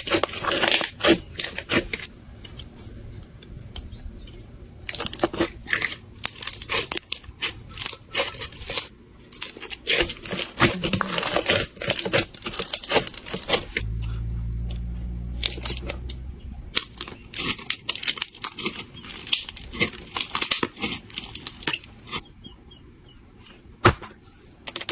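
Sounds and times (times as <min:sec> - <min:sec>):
slime crackling and crunching: 0:00.0 - 0:02.1, 0:04.8 - 0:22.2
low hum: 0:13.8 - 0:16.8.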